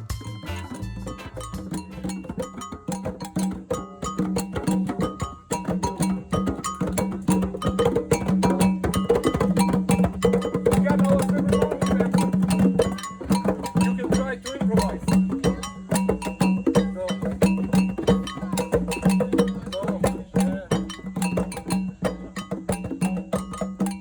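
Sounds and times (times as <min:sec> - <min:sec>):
fast hand percussion: 0:00.0 - 0:24.0.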